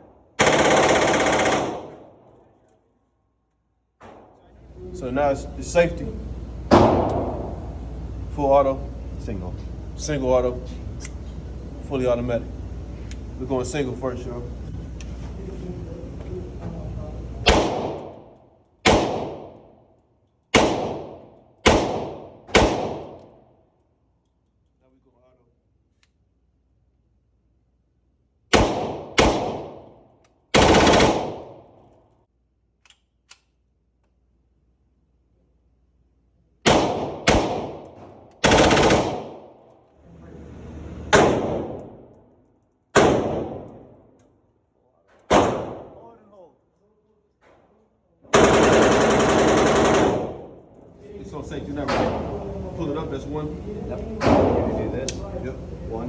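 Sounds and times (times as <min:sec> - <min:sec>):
automatic gunfire burst: 0:00.4 - 0:02.1, 0:30.6 - 0:31.5, 0:38.4 - 0:39.4, 0:41.1 - 0:41.8, 0:48.3 - 0:50.5
gunshots echoing: 0:17.4 - 0:19.7, 0:20.5 - 0:23.2, 0:28.5 - 0:30.0, 0:30.6 - 0:31.8, 0:36.7 - 0:39.6, 0:41.1 - 0:42.0, 0:43.0 - 0:43.9, 0:45.3 - 0:46.0.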